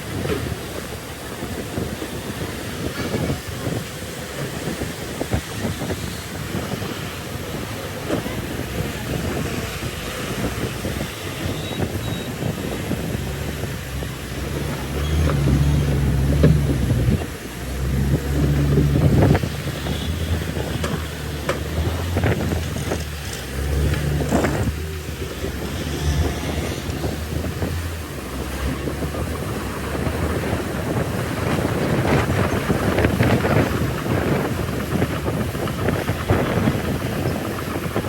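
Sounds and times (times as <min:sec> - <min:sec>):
bulldozer diesel engine rumbling: 0:00.0 - 0:38.0.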